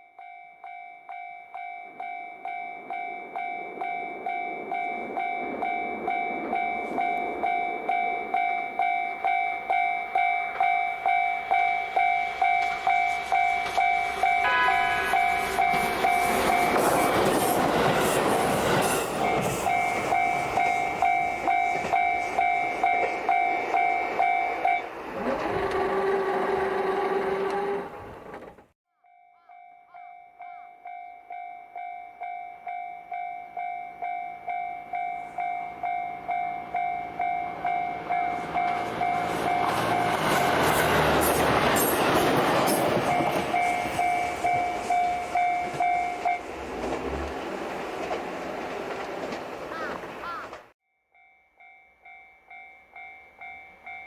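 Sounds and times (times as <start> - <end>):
level crossing bell ringing: 0.0 - 16.8
train rail and engine noise: 1.0 - 28.7, 33.4 - 50.8
train horn blast: 13.1 - 16.0.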